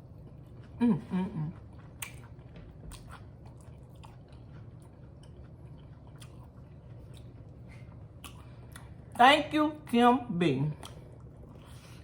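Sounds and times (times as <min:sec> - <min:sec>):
person chewing food: 0:00.0 - 0:09.2, 0:10.8 - 0:12.0
low steady hum: 0:00.0 - 0:12.0.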